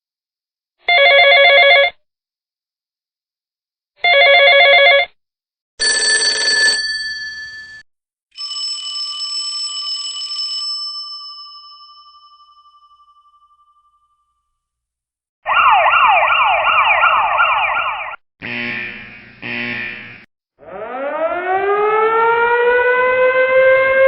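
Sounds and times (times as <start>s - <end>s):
telephone bell ringing: 0.9s - 2.0s, 4.0s - 5.2s, 5.8s - 7.8s, 8.4s - 14.0s.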